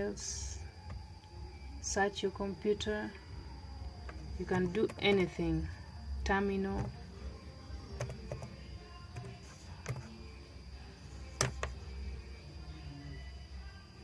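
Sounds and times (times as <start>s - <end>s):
faint high whine: 0.0s - 14.0s
low electrical hum: 0.0s - 14.0s.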